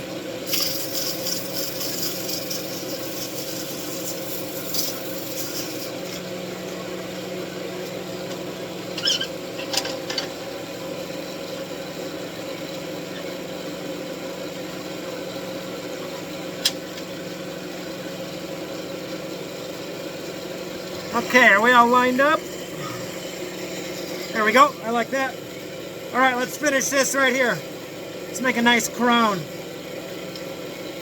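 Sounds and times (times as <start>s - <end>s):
sandpaper hissing on wood: 0.5s - 6.0s
wood lathe motor humming: 1.2s - 6.2s, 20.6s - 27.8s.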